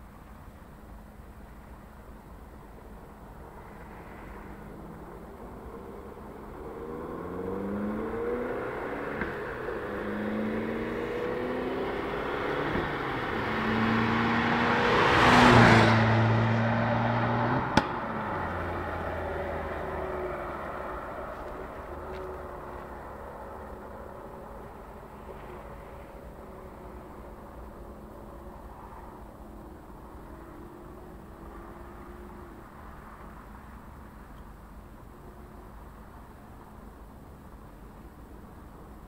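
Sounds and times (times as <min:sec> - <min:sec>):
car engine accelerating: 0:04.4 - 0:32.8.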